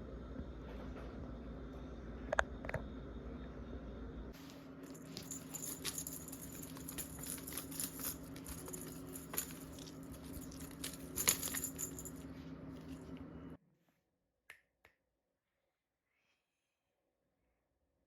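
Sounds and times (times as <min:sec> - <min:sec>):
cat clicking and rustling: 0:04.9 - 0:12.2.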